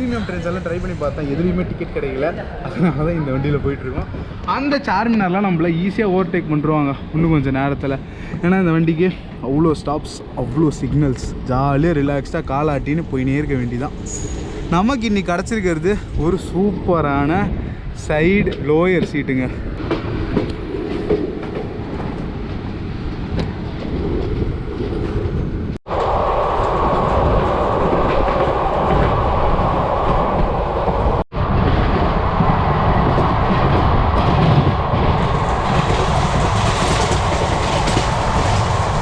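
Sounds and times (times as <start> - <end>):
train wheels rumbling on track: 0.0 - 39.0.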